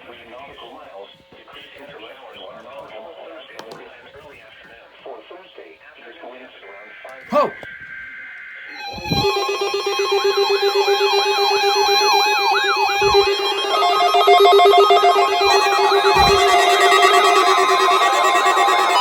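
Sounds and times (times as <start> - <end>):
fast-warbling alarm sirens: 7.7 - 19.0
steady electronic tone: 8.2 - 19.0
stepped beeping: 8.7 - 19.0.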